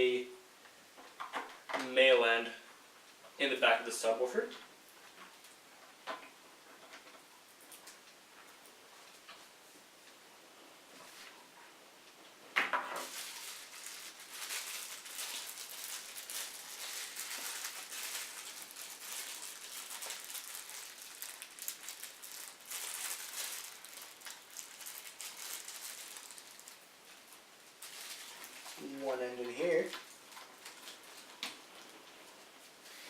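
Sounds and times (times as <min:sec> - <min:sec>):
plastic packaging crinkling: 0:12.9 - 0:32.1.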